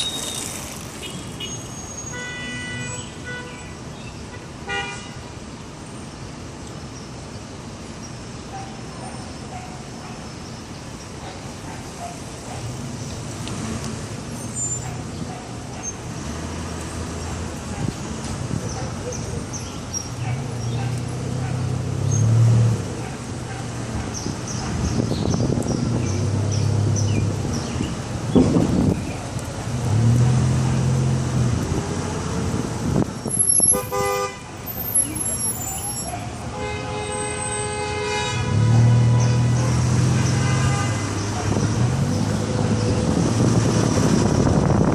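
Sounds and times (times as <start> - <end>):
passing vehicles: 0.0 - 44.9.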